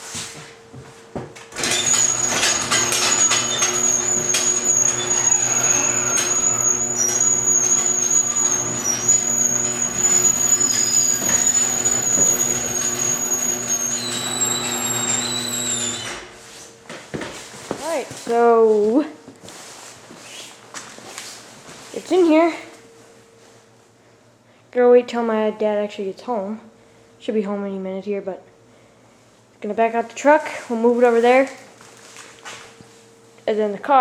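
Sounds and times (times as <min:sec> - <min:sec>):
garage door opener motor whine: 0:01.5 - 0:16.4
rattling: 0:01.6 - 0:15.9.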